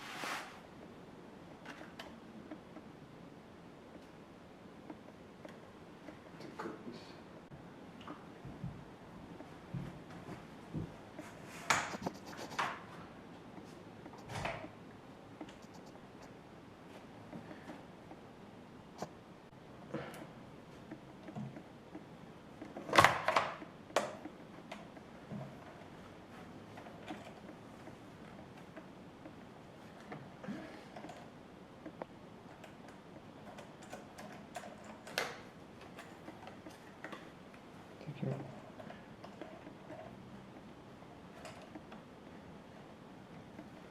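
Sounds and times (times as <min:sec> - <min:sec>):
scraping and rustling: 0:00.0 - 0:00.7.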